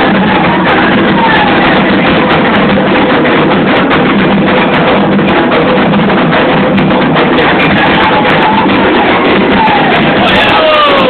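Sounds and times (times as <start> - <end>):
hand drums playing rhythm: 0.0 - 11.0.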